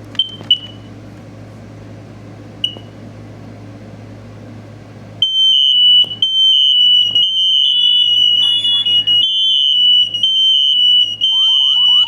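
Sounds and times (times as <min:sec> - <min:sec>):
smoke alarm chirp: 0:00.2 - 0:00.9, 0:05.2 - 0:12.0
smoke alarms sounding: 0:05.2 - 0:12.0.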